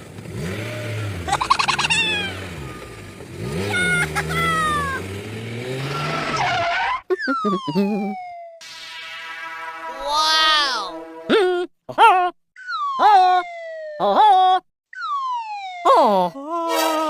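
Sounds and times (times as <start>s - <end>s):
car engine revving: 0.0s - 7.0s
tire squeals: 1.3s - 7.1s
falling whistle-like glide: 5.9s - 11.2s.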